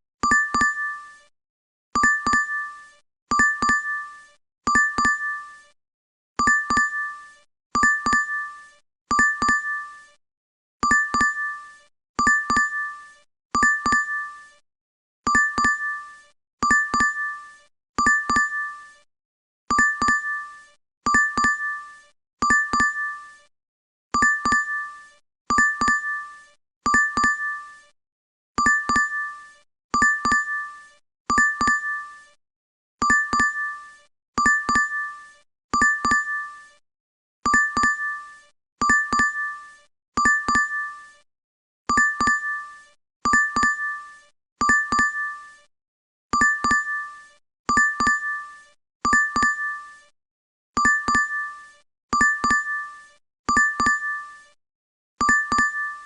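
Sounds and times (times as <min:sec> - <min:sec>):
notification chime double ding: 0:55.2 - 0:55.9.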